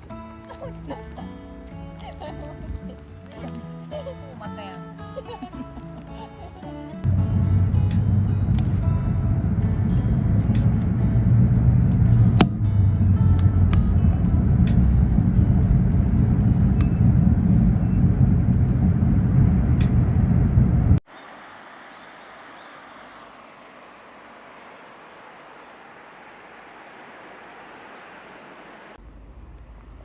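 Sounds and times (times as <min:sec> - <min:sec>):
sharp crackles: 0:00.0 - 0:21.0
steady hiss: 0:00.0 - 0:30.0
low rumble: 0:07.0 - 0:21.0
wind buffeting microphone: 0:07.0 - 0:21.0.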